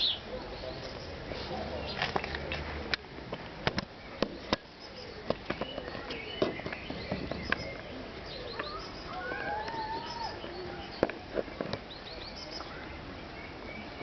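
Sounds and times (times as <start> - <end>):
pet bird chirping and calling: 4.4 - 11.1.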